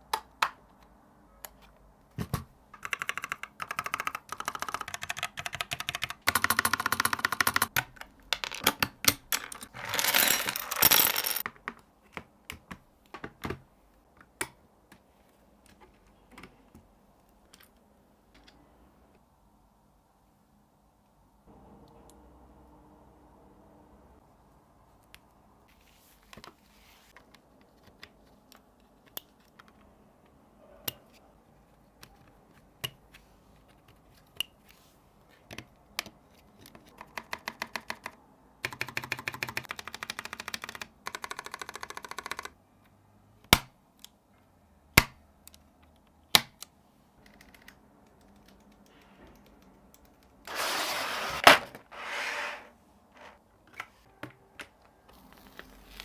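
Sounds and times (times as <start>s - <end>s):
mechanical keyboard keystrokes: 2.2s - 9.3s, 36.9s - 42.6s.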